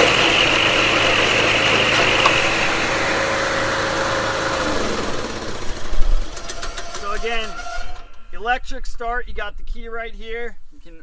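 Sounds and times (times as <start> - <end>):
mower engine running: 0.0 - 7.6
cutting blade whirring: 0.0 - 8.2.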